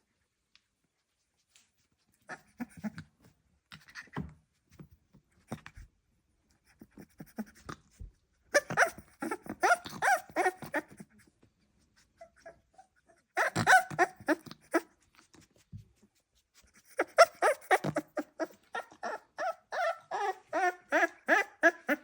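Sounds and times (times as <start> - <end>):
puppy whining and yelping: 2.2 - 3.0, 8.5 - 11.2, 12.0 - 15.0, 16.7 - 22.0
puppy grunting and snuffling: 2.2 - 4.2, 6.7 - 11.3, 12.0 - 15.4, 16.7 - 22.0.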